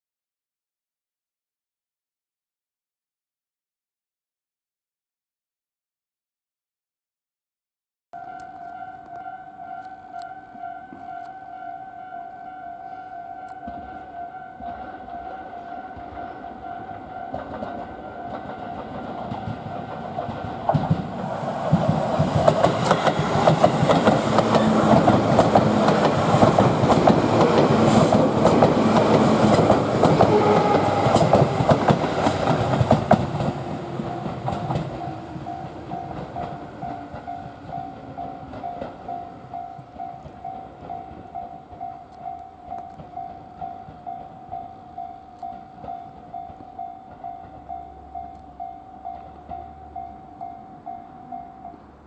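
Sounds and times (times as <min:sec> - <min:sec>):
level crossing bell ringing: 0:08.2 - 0:18.9
train wheels clattering: 0:14.6 - 0:51.9.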